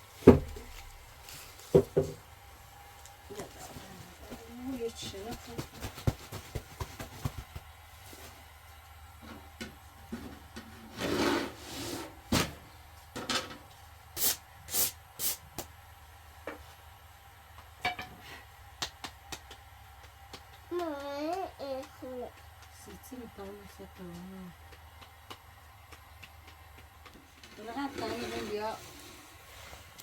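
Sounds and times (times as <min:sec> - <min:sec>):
knocks and taps: 0:05.0 - 0:07.6, 0:18.8 - 0:27.6.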